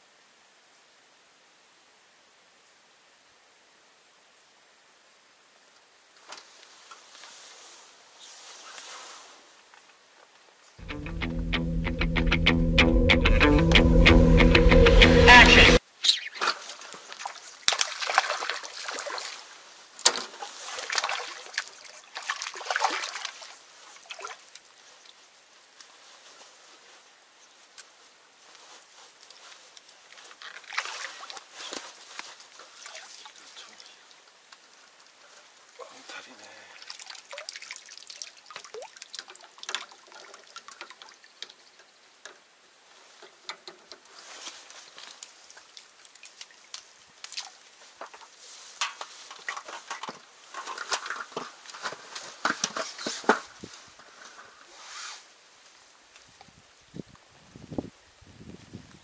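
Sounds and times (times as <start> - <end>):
water splashing and sloshing: 16.4 - 24.9, 30.1 - 35.7, 36.8 - 41.6, 43.7 - 53.6.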